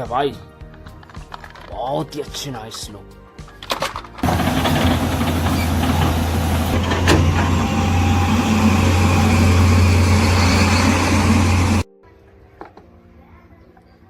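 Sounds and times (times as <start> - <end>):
motor running with hum and hiss: 4.2 - 11.8.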